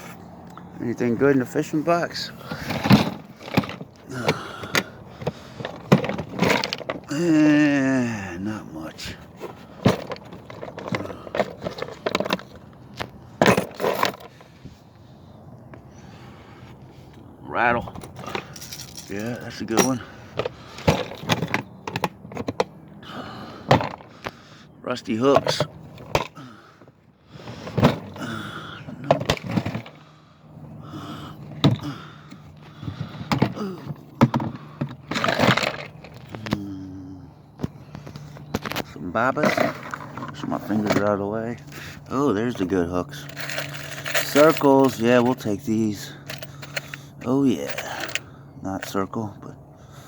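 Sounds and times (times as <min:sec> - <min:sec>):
tackle clattering and scraping: 0:01.2 - 0:07.3, 0:09.0 - 0:14.6, 0:17.9 - 0:22.7, 0:29.0 - 0:30.1, 0:32.6 - 0:36.6, 0:37.6 - 0:42.0, 0:42.7 - 0:49.0.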